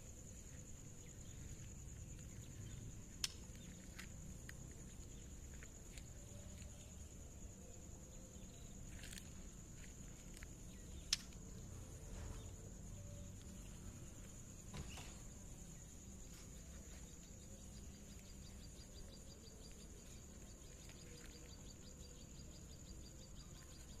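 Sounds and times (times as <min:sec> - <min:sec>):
faint high ticks: 0:03.1 - 0:04.6, 0:10.4 - 0:11.5
sharp click: 0:03.2 - 0:03.4
faint bird chirps: 0:11.8 - 0:24.0.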